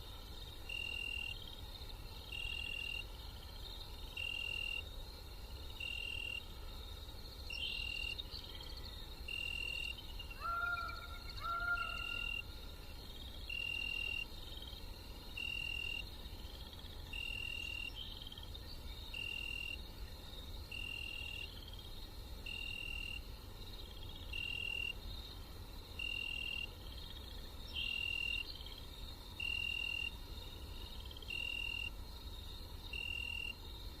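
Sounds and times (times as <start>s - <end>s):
insects chirping chorus: 0.0s - 34.0s.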